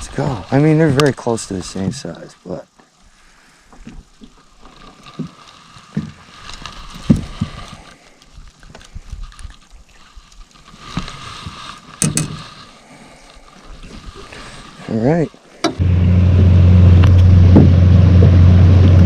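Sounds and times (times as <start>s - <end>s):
knocks and thumps of fishing gear: 7.0s - 7.6s, 12.0s - 12.5s, 17.4s - 17.8s.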